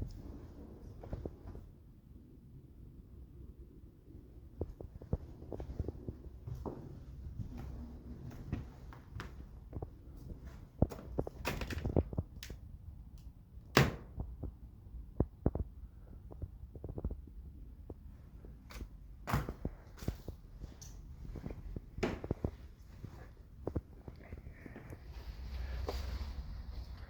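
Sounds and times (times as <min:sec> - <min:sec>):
footsteps: 0:04.6 - 0:12.2, 0:18.1 - 0:27.0.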